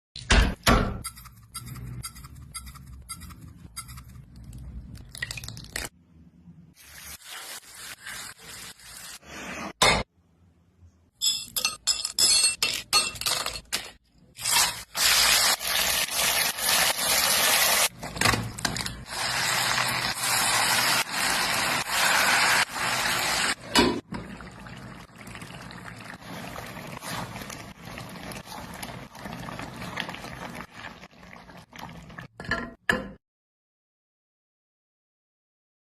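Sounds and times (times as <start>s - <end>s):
liquid pouring: 24.1s - 32.3s.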